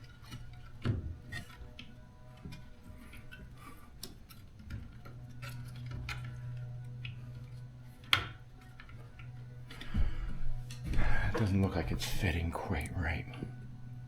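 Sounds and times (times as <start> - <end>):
low steady hum: 0.0 - 14.0
clicks and taps of plastic parts: 0.2 - 10.1.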